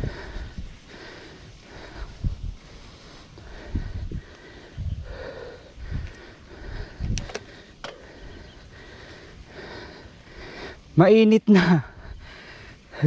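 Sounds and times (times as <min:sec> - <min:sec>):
person breathing hard: 0:00.0 - 0:11.0, 0:11.7 - 0:13.0
sharp clicks: 0:07.0 - 0:08.2.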